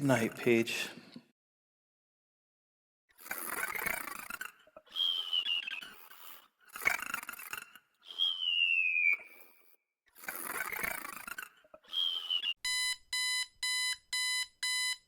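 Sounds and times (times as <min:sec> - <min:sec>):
cartoon snoring with whistle: 0:03.1 - 0:12.6.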